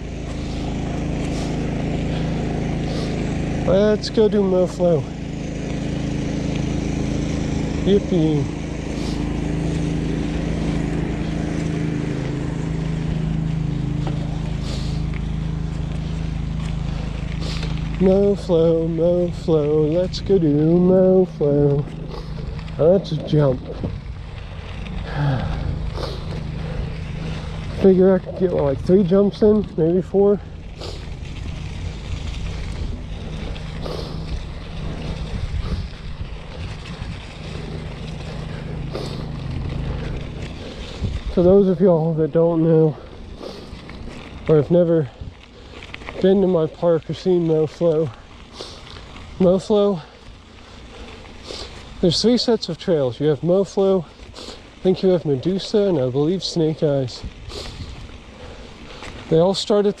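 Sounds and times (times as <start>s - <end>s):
bike tyres rolling on dirt: 0.0s - 60.0s
continuous rushing noise: 0.0s - 60.0s
motor-like hum: 0.0s - 60.0s
wind on microphone: 34.4s - 37.5s, 40.9s - 41.4s.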